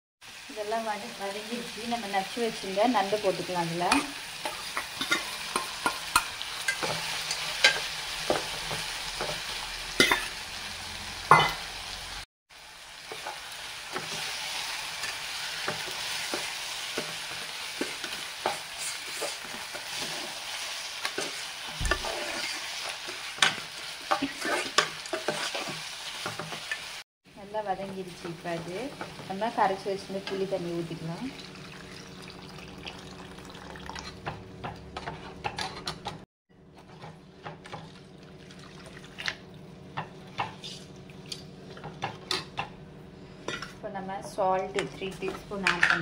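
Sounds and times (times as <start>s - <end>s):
food sizzling in oil: 0.2s - 34.8s.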